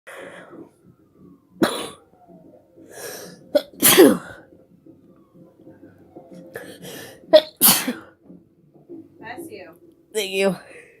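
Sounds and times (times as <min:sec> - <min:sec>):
sharp breaths: 0:00.1 - 0:00.8, 0:02.8 - 0:03.5.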